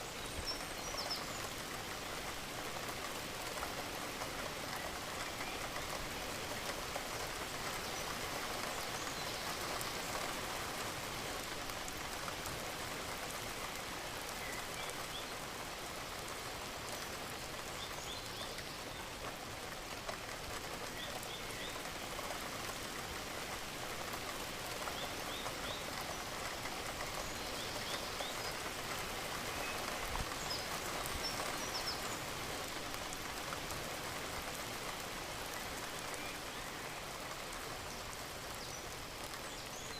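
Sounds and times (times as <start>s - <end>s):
rain pattering: 0.0s - 39.9s.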